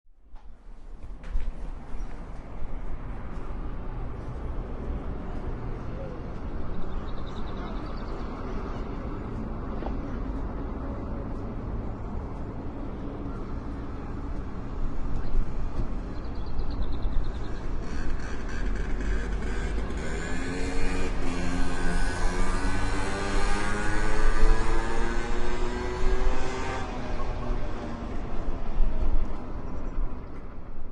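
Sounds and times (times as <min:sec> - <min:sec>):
motorcycle engine revving: 0:17.8 - 0:27.9.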